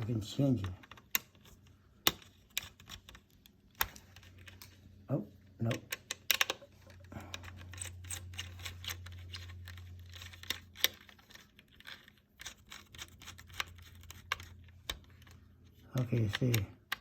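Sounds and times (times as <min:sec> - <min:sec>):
handling wires and small parts: 0:00.0 - 0:17.0
low steady hum: 0:00.0 - 0:17.0.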